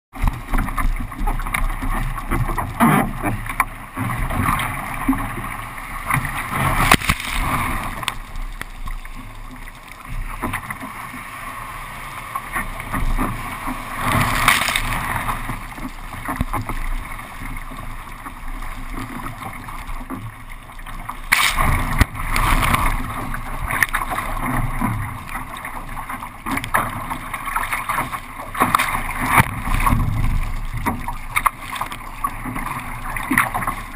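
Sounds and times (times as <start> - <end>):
water rushing and splashing: 0.1 - 33.9.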